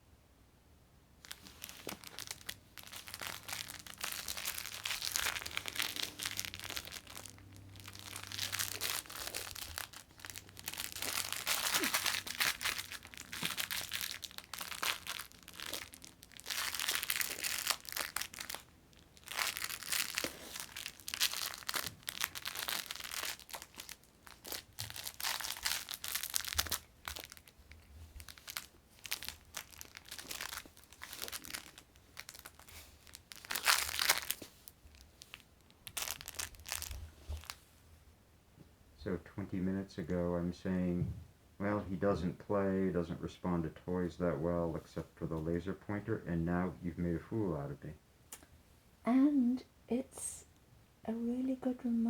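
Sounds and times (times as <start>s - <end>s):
crinkle toy rustling: 1.2s - 37.9s.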